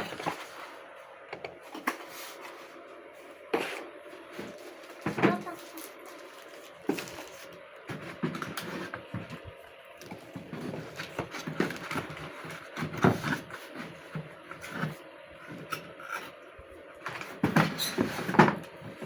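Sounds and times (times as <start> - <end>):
packaging rustling: 4.3 - 14.0.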